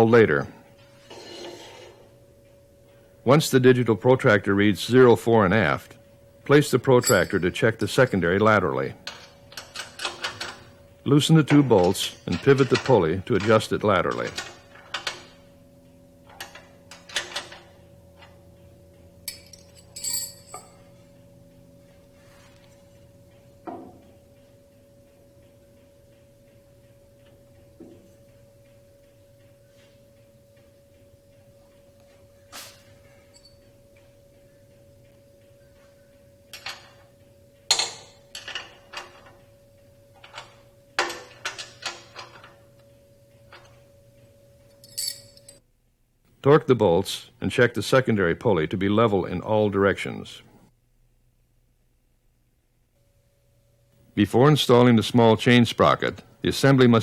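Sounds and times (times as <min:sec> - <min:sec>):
faint hum: 0:00.0 - 0:57.0
metal tools clinking: 0:06.8 - 0:15.4, 0:19.3 - 0:21.0, 0:33.2 - 0:33.7, 0:40.2 - 0:42.6, 0:44.7 - 0:45.6.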